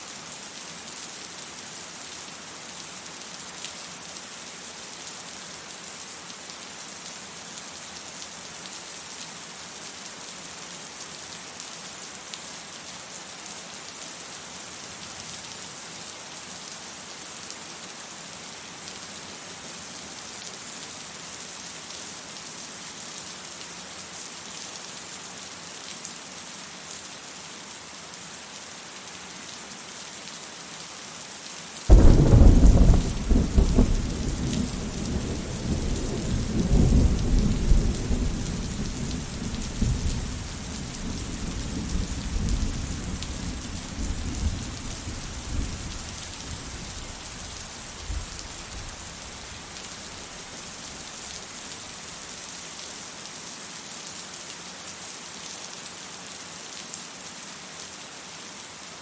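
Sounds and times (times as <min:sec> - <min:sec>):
heavy rain: 0:00.0 - 0:59.0
thunder crack and rumble: 0:31.9 - 0:46.1.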